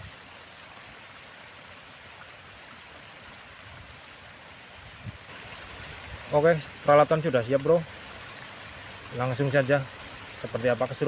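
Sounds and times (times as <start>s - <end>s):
running water hissing: 4.6s - 11.0s.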